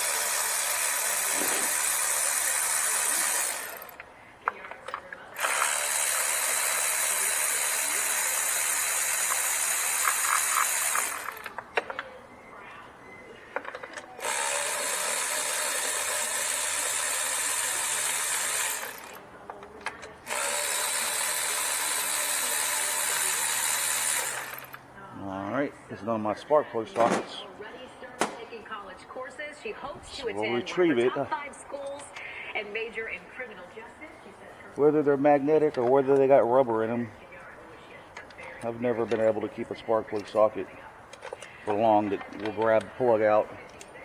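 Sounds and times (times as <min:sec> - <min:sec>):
power ratchet hissing: 0:00.0 - 0:04.0, 0:05.4 - 0:11.6, 0:14.2 - 0:19.2, 0:20.2 - 0:24.8.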